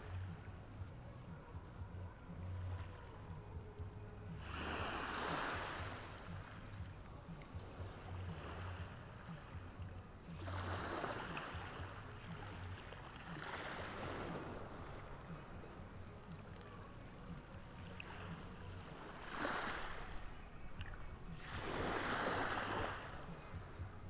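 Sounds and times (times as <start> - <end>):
ocean waves washing onto shore: 4.3 - 9.7, 10.3 - 24.0.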